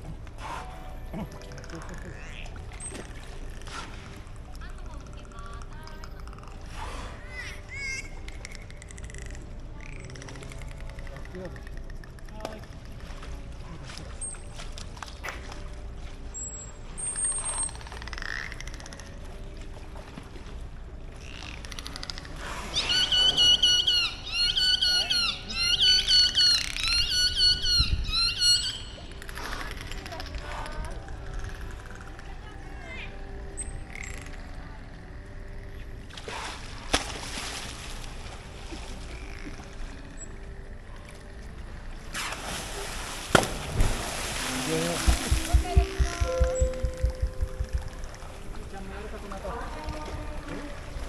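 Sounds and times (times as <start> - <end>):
dolphins exhaling puffs: 0.0 - 5.6, 6.2 - 12.2, 21.2 - 23.6, 29.2 - 31.8
pool water noise: 0.0 - 26.8, 28.6 - 51.0
dolphin exhaling through blowhole: 6.6 - 7.5
steady low rumble: 44.9 - 49.3.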